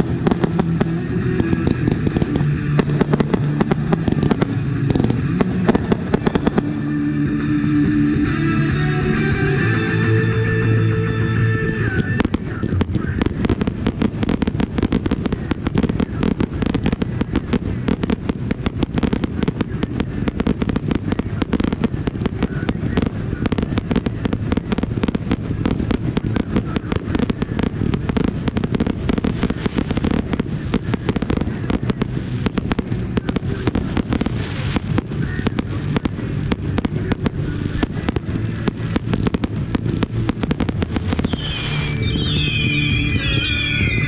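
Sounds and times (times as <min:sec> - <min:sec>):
fireworks bangs and crackles: 0:00.0 - 0:07.6, 0:09.9 - 0:44.0
rock music: 0:00.0 - 0:12.9, 0:38.3 - 0:44.0.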